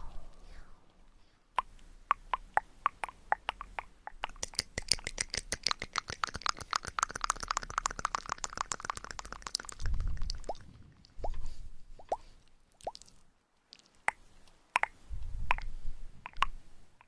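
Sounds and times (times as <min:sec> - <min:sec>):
microphone brushing rumble: 0:00.0 - 0:01.0
wet tongue clicks and pops: 0:01.6 - 0:11.4, 0:12.8 - 0:16.6.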